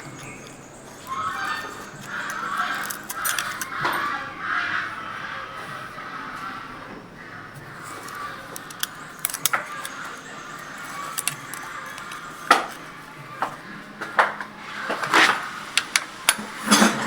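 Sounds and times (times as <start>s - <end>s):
metal tools clinking: 0.0s - 4.1s, 7.8s - 13.1s, 14.9s - 17.0s.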